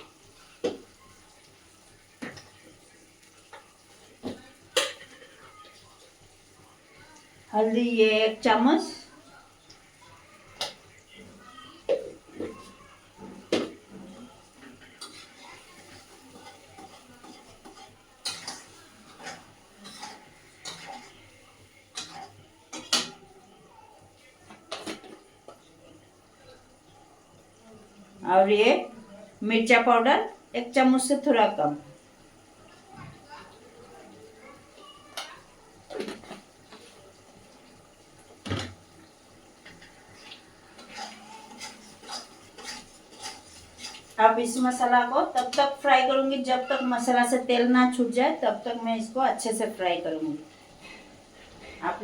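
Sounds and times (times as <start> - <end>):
spoon stirring in a cooking pot: 11.8 - 25.7, 34.6 - 47.4.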